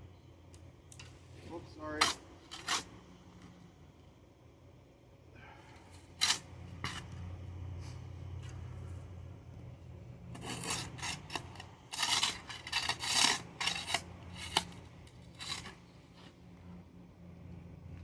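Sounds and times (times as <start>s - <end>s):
steady low hum: 0.0s - 18.0s
shovel scraping concrete: 1.4s - 3.0s, 6.0s - 7.2s, 10.4s - 16.3s.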